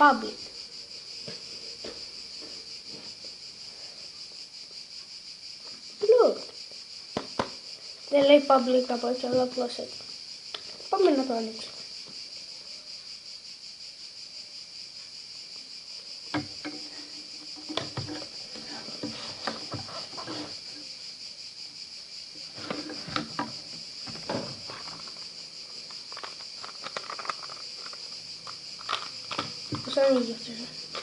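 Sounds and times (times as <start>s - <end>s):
crickets chirring: 0.0s - 31.0s
hands handling a box: 24.2s - 28.1s.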